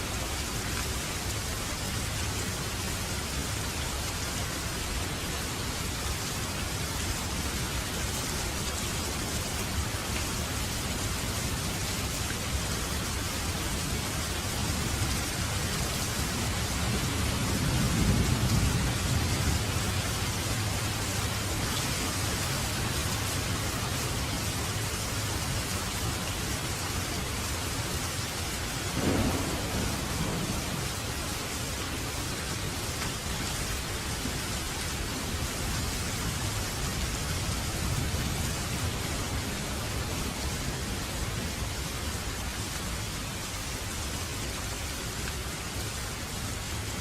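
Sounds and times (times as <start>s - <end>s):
steady rain hissing: 0.0s - 47.0s
distant thunder rumble: 28.9s - 34.2s.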